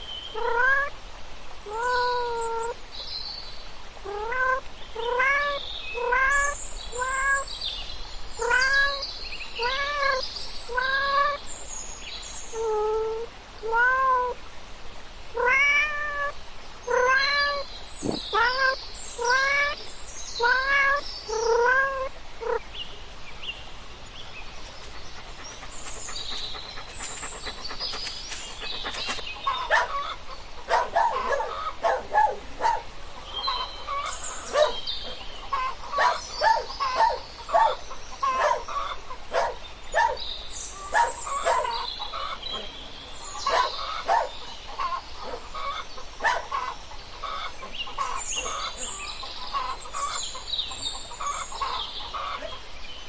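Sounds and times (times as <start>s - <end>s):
short chirping calls: 22.9s - 30.0s.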